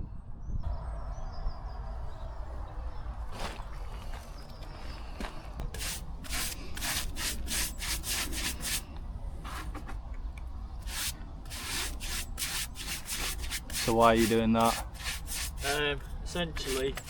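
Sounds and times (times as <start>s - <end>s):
scratchy brush strokes on wood: 5.2s - 10.0s, 10.8s - 17.0s.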